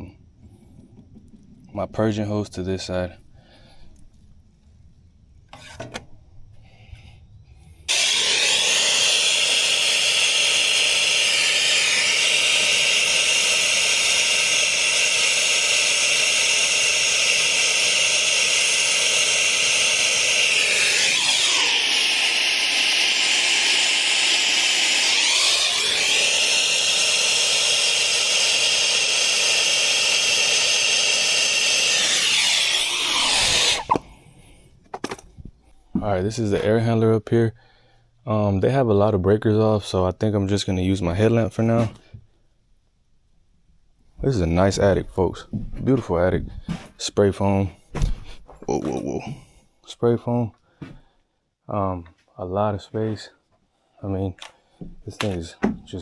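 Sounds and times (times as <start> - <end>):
gas hissing from a pipe: 6.6 - 34.6.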